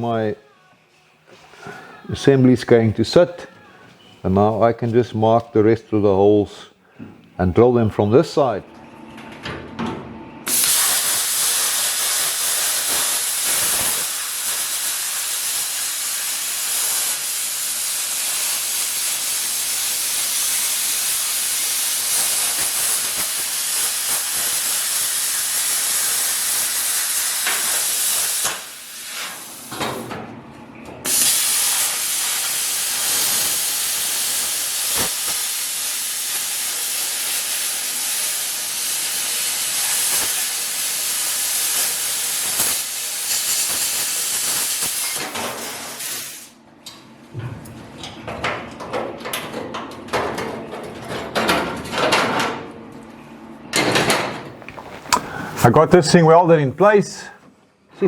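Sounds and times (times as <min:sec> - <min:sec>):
welding hiss: 0:10.5 - 0:30.0, 0:31.1 - 0:46.6.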